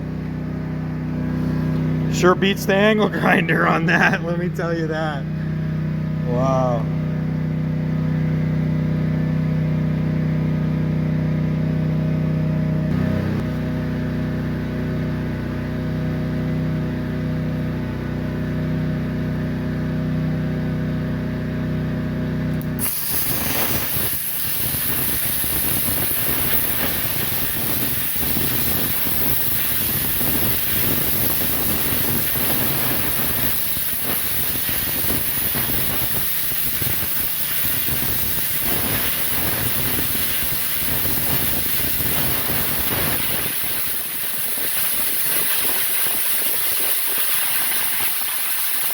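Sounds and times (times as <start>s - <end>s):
machine hum: 0.0s - 8.5s, 22.6s - 45.8s
plasma cutter hissing: 22.7s - 48.9s.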